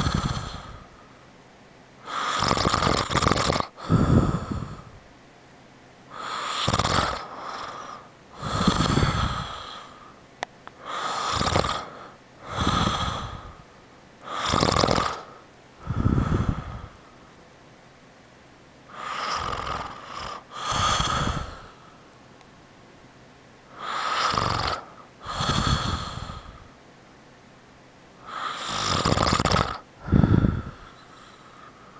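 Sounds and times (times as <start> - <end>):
man snoring: 0.0 - 0.9, 2.0 - 4.9, 6.1 - 10.0, 10.8 - 13.6, 14.3 - 17.0, 18.9 - 21.8, 23.8 - 26.7, 28.2 - 31.7.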